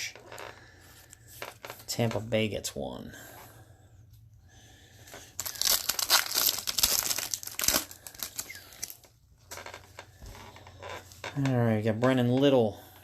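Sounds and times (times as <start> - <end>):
foil wrapper tearing and crinkling: 5.3 - 9.1.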